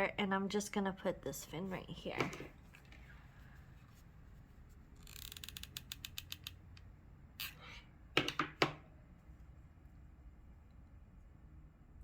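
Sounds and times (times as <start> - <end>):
small ratchety clicks: 5.0 - 6.8.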